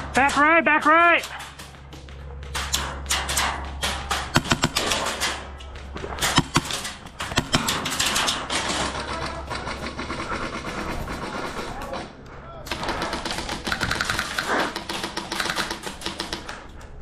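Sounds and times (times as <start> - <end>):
airsoft gunfire cracks and clicks: 2.5 - 12.1.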